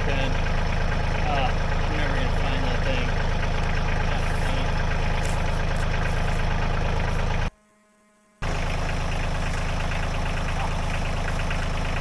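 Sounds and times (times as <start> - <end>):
engine idling: 0.0 - 7.5, 8.4 - 12.0.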